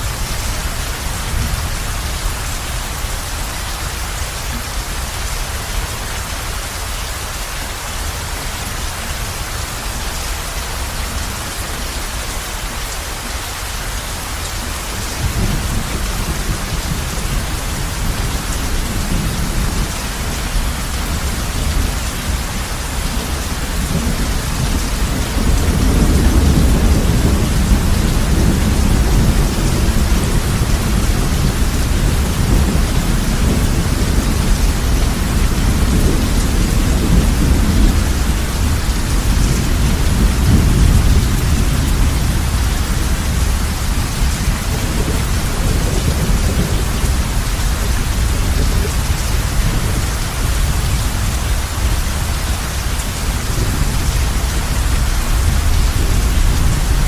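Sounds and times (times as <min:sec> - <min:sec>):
heavy rain on a roof: 0:00.0 - 0:57.0
thunder rumble: 0:14.8 - 0:57.0.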